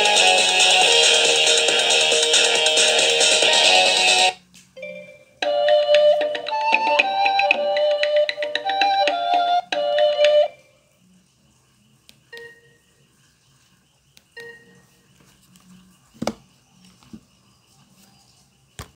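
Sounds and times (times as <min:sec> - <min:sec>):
phone ringtone melody: 0:00.0 - 0:10.8.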